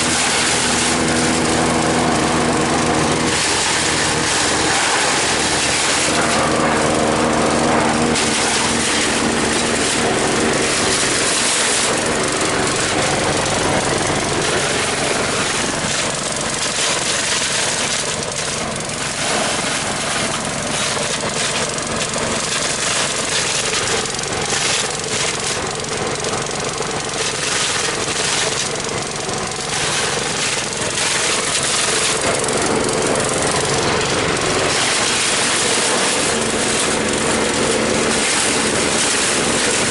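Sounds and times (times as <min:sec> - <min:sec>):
leaf chopper engine running: 0:00.0 - 0:39.9
rough clattering chopping: 0:29.7 - 0:39.9.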